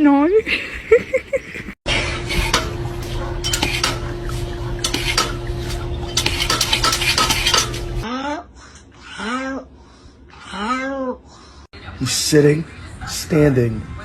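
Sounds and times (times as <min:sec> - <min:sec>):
steady low hum: 0:01.4 - 0:09.0
dishes and utensils clinking: 0:02.2 - 0:08.1.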